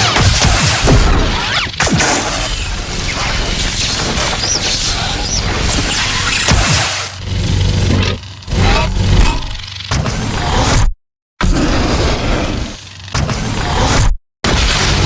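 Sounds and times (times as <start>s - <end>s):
lightsaber humming and crackling: 0.0s - 10.6s.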